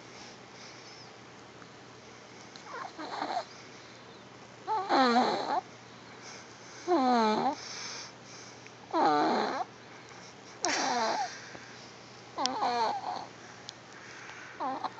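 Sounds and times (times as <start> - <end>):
baby snoring: 2.7 - 3.5, 4.7 - 5.6, 6.8 - 7.6, 8.9 - 9.7, 10.7 - 11.4, 12.4 - 13.3, 14.6 - 14.9.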